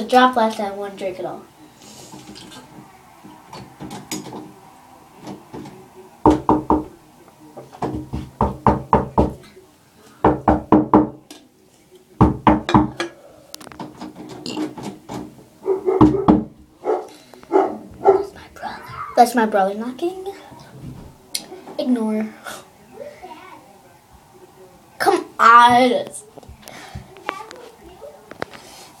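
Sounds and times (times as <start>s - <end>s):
knocking on a door: 5.6s - 6.9s, 7.8s - 9.4s, 10.2s - 11.2s, 12.2s - 13.1s, 15.9s - 16.6s.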